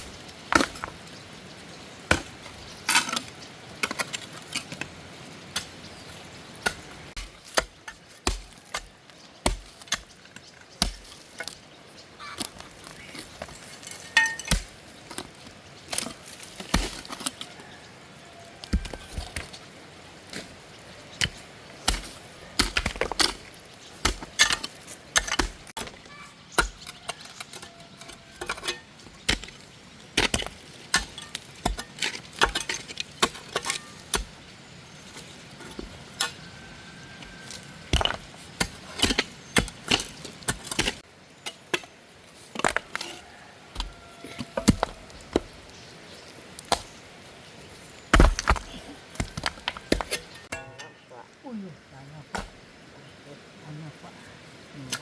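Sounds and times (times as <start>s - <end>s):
digging tool chopping ground: 21.2s - 27.1s.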